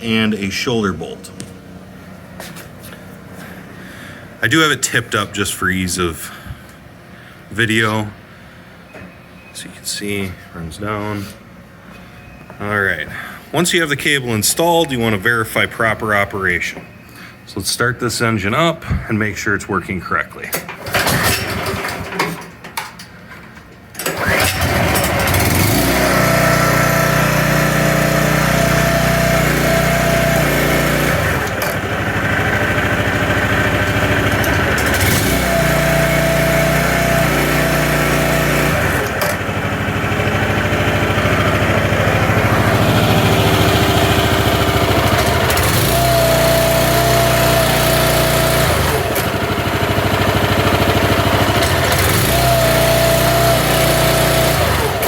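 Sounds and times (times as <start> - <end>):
small gasoline engine running: 20.8 - 22.3, 24.0 - 55.0.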